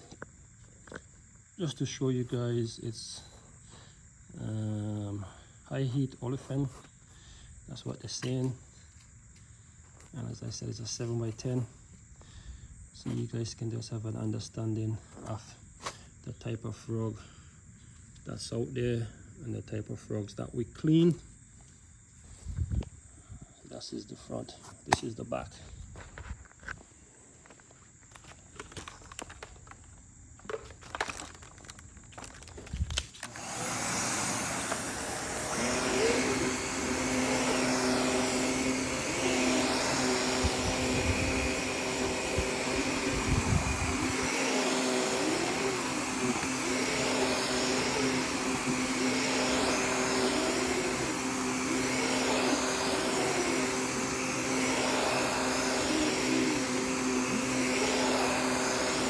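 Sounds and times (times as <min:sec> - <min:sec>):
vacuum cleaner running: 0:33.2 - 0:59.0.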